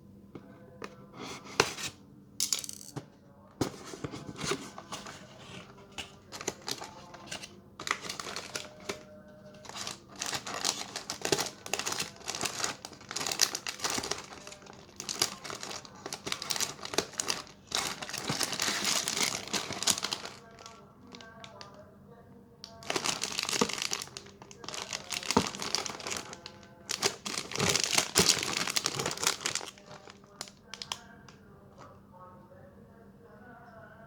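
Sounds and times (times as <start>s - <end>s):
plastic pouches crinkling: 4.2s - 21.8s, 22.6s - 31.1s.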